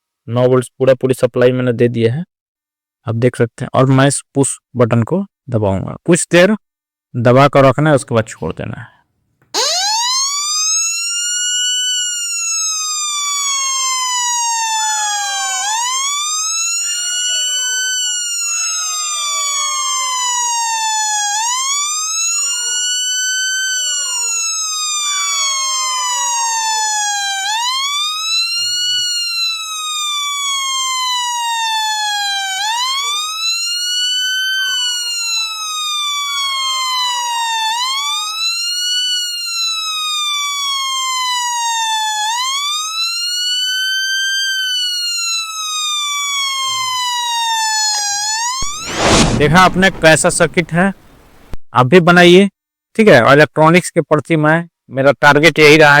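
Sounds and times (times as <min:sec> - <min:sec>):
electronic siren wail: 0:09.6 - 0:51.2.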